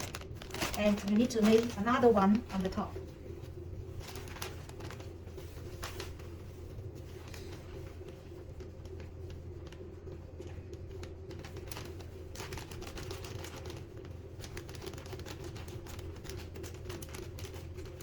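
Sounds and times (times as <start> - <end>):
plastic bag crinkling: 0.0 - 6.6.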